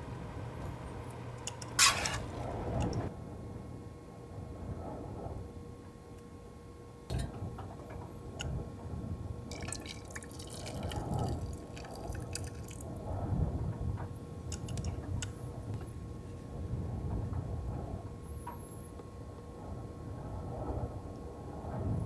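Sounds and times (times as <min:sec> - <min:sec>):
small clicks and clinks: 0:14.5 - 0:15.4.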